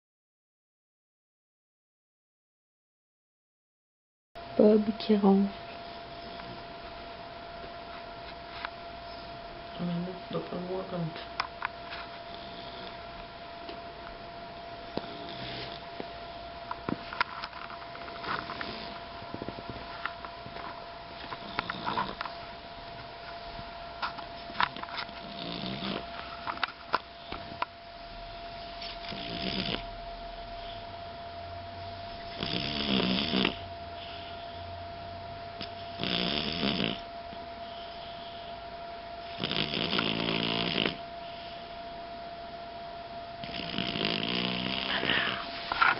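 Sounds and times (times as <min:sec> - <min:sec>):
faint steady hum: 0:04.4 - 0:45.9
pet snoring: 0:12.2 - 0:13.0, 0:14.9 - 0:16.0, 0:18.1 - 0:19.8, 0:21.2 - 0:22.2, 0:24.7 - 0:26.4, 0:28.8 - 0:29.9, 0:32.2 - 0:34.4, 0:35.6 - 0:38.5, 0:39.2 - 0:41.7, 0:43.4 - 0:45.6.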